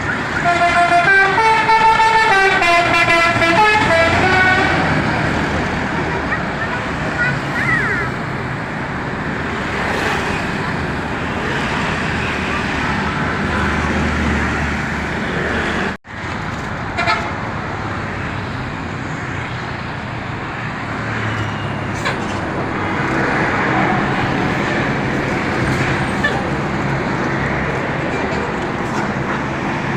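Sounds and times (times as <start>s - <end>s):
heavy engine rumble: 0.0s - 18.0s, 21.5s - 29.9s
bus and car engines passing: 0.0s - 29.9s
car horn toots: 0.3s - 5.0s.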